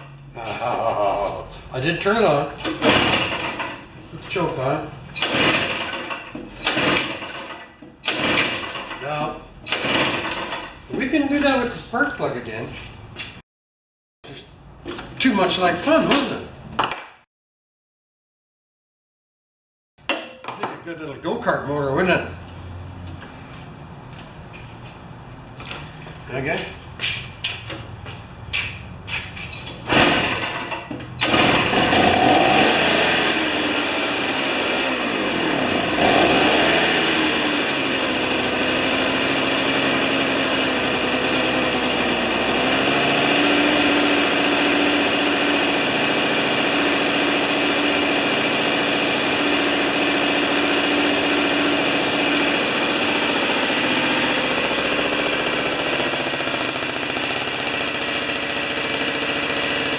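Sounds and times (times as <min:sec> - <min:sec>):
two-stroke engine revving and running: 0:00.0 - 0:11.6, 0:29.8 - 0:59.9
engine starter rasps: 0:01.7 - 0:11.6, 0:29.4 - 0:59.9.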